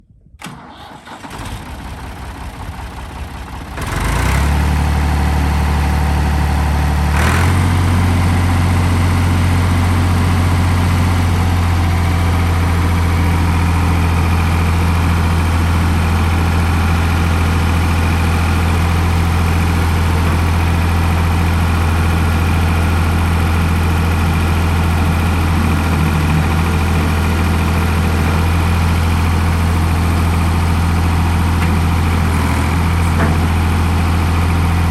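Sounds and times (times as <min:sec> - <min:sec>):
engine cranking: 0:00.4 - 0:02.8
engine idling: 0:01.0 - 0:34.9.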